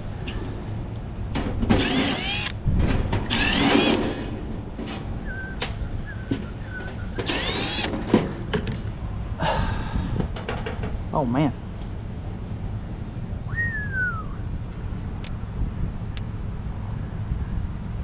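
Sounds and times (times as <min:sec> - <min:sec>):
steady low rumble: 0:00.0 - 0:18.0
cordless drill spinning screws: 0:01.8 - 0:02.6, 0:03.3 - 0:04.2, 0:07.2 - 0:08.0.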